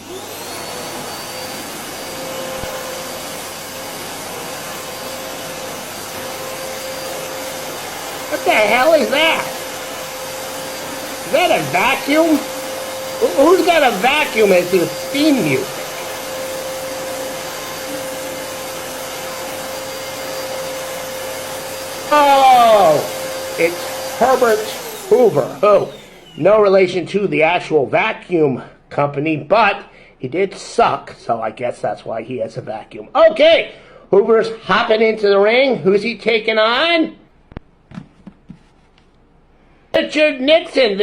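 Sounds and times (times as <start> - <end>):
vacuum cleaner running: 0.0 - 28.1.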